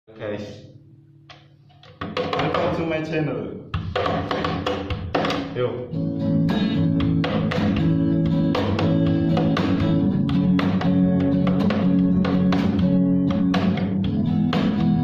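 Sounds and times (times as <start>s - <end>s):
acoustic guitar strumming: 3.7s - 15.0s.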